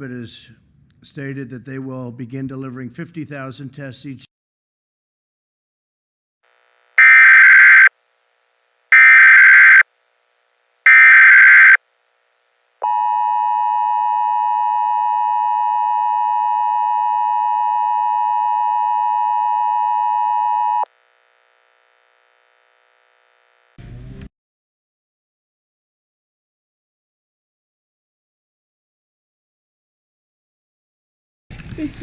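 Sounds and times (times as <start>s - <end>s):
digital header code bursts: 7.0s - 7.9s, 8.9s - 9.8s, 10.9s - 11.8s
two-tone attention signal: 7.0s - 7.9s, 9.0s - 9.8s, 10.9s - 11.8s.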